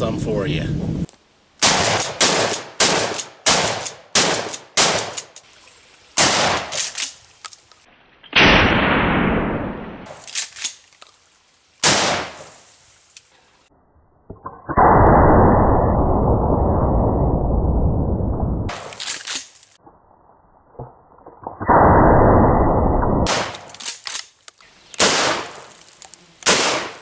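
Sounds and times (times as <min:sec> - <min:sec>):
loud muffled rushing sound: 0:00.0 - 0:01.1
shotgun shots: 0:01.6 - 0:05.4, 0:06.2 - 0:07.0, 0:11.8 - 0:12.5, 0:23.3 - 0:23.8, 0:25.0 - 0:25.8, 0:26.4 - 0:27.0.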